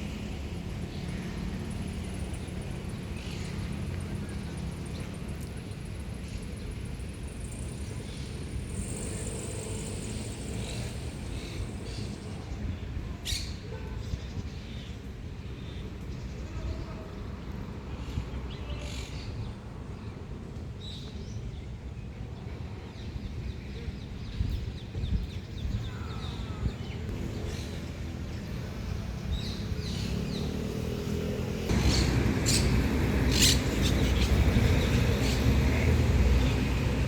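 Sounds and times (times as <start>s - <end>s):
birds chirping: 24.3s - 37.0s.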